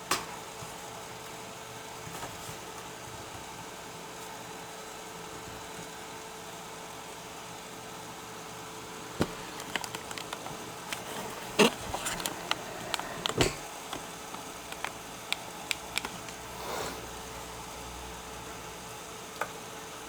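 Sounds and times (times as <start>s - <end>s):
clicks and knocks of laptop parts: 9.2s - 16.4s.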